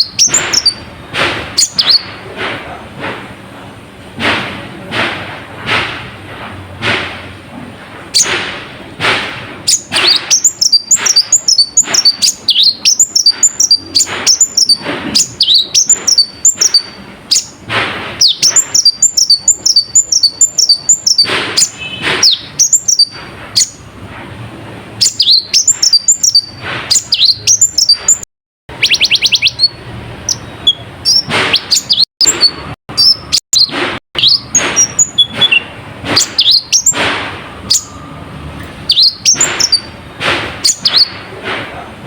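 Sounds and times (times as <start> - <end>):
bird singing: 0.0 - 0.9, 1.6 - 2.2, 9.7 - 17.6, 18.2 - 23.8, 25.0 - 37.0, 37.6 - 38.2, 38.9 - 40.0, 40.6 - 41.2
harsh downward bird calls: 0.0 - 0.9, 1.6 - 2.3, 9.7 - 17.6, 18.2 - 23.8, 25.0 - 37.0, 37.7 - 38.0, 38.9 - 40.0, 40.6 - 41.3.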